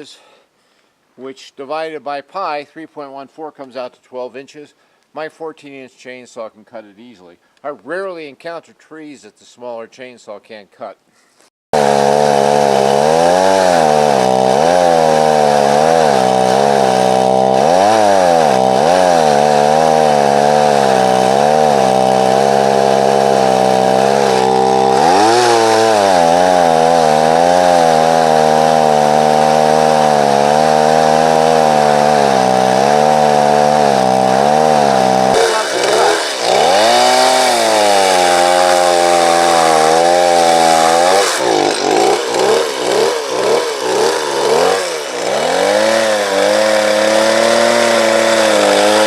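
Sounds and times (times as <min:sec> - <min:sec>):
chainsaw cutting into tree trunk: 0:11.8 - 0:49.0.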